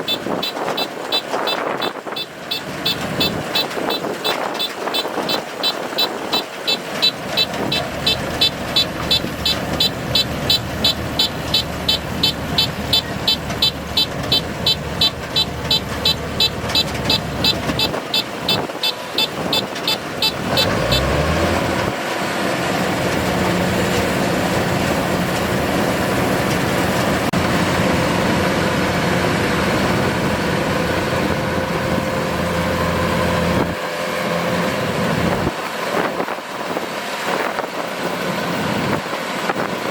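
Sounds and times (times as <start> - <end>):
high electronic beeper: 0.0 - 21.1
combine harvester engine: 0.0 - 39.9.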